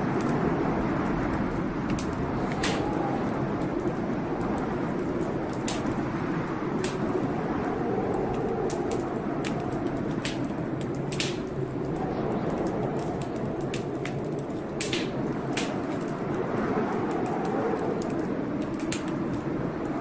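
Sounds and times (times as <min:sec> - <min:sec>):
low rushing noise: 0:00.0 - 0:15.5
wood fire crackling and popping: 0:00.0 - 0:20.0.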